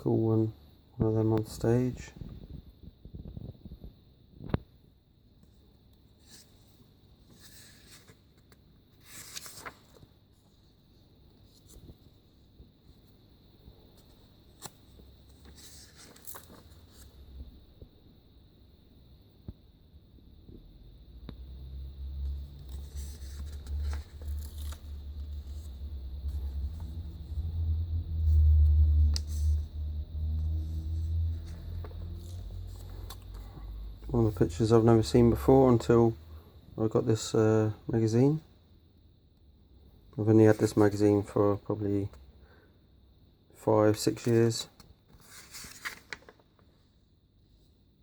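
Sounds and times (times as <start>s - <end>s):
magazine pages rustling: 7.3s - 10.2s, 14.5s - 17.1s, 22.6s - 27.0s, 45.1s - 46.7s
low rumble: 21.6s - 34.5s.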